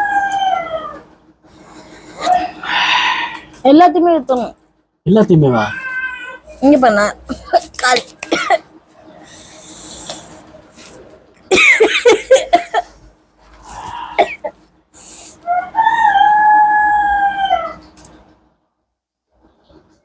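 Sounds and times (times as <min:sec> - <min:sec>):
person sniffing hard: 0:01.5 - 0:02.4, 0:09.2 - 0:10.4, 0:13.6 - 0:15.4
person coughing and spluttering: 0:08.2 - 0:08.6, 0:11.5 - 0:13.0, 0:14.2 - 0:14.5
long vocal cry: 0:13.7 - 0:14.5.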